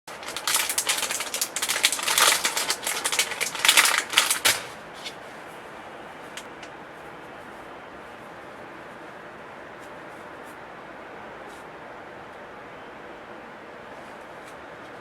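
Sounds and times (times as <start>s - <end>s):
crackling and rustling handling: 0.0s - 9.1s.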